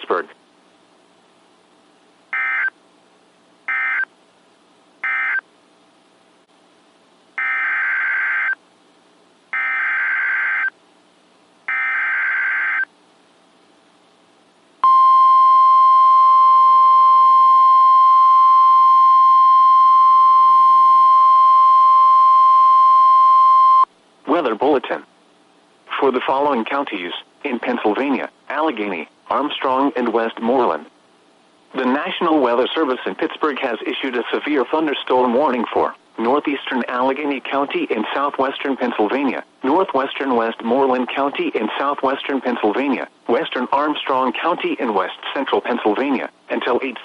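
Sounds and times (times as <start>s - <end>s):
faint radio hiss: 0.0s - 47.0s
steady warning alarm tone: 2.4s - 2.7s, 3.7s - 4.1s, 5.0s - 5.4s, 7.4s - 8.6s, 9.6s - 10.7s, 11.7s - 12.9s.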